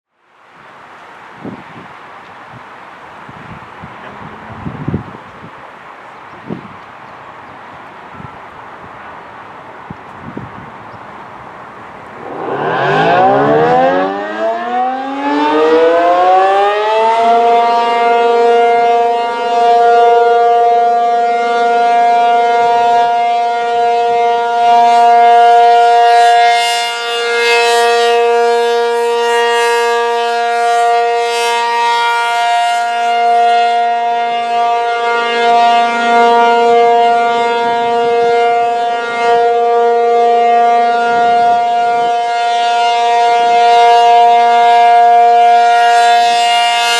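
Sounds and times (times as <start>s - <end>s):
warning siren winding up: 12.0s - 19.0s, 45.4s - 46.9s.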